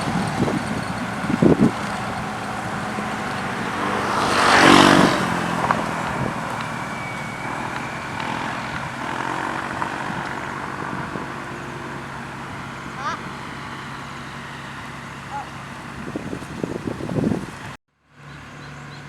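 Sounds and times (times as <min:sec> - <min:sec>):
machine rushing past: 0:00.0 - 0:17.8
road roller diesel engines running: 0:00.0 - 0:19.0.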